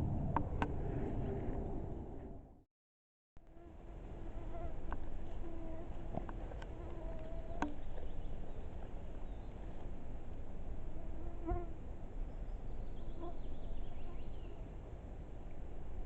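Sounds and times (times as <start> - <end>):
constant low rumble: 0.0 - 2.6, 3.4 - 16.0
flying insect buzzing: 3.4 - 7.8.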